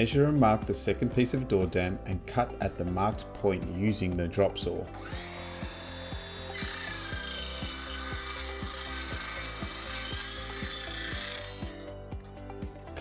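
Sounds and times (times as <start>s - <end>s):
drop saw cutting: 5.0s - 12.0s.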